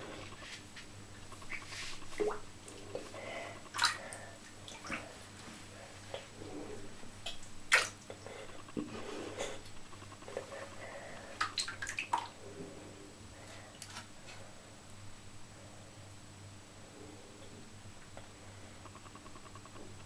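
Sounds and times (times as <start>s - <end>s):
water splashing in bathtub: 1.4s - 5.3s, 7.2s - 12.4s.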